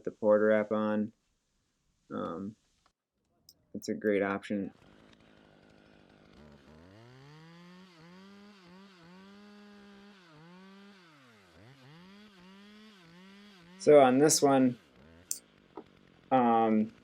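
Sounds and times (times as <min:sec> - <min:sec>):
faint chainsaw revving: 0:04.3 - 0:17.0.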